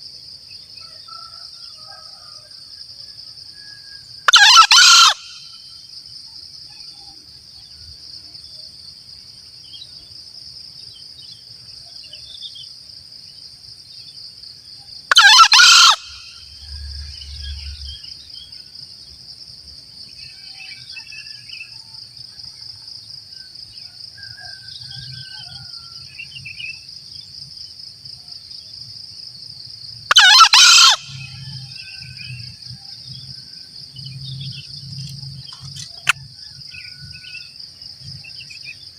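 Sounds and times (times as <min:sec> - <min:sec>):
junglefowl crowing: 0:04.3 - 0:05.6, 0:15.1 - 0:17.9, 0:30.1 - 0:32.3.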